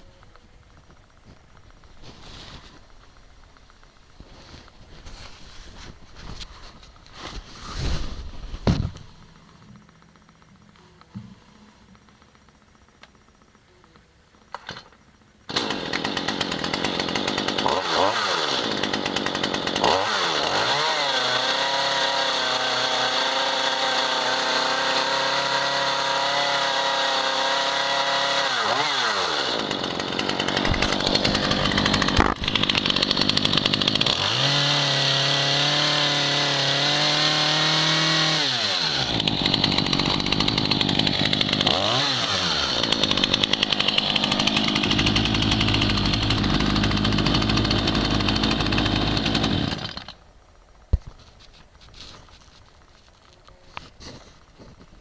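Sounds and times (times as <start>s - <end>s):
chainsaw engine revving and idling: 15.5s - 50.2s.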